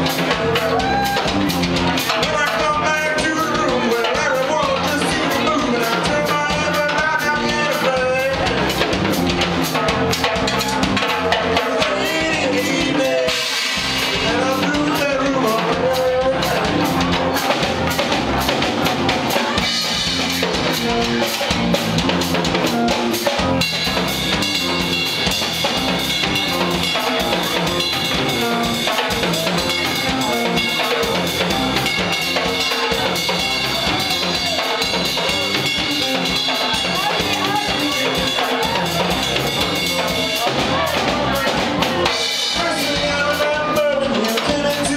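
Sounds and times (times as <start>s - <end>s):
drum kit: 0.0s - 44.9s
live rock band playing: 0.0s - 44.9s
sustained high guitar tones: 9.8s - 44.9s.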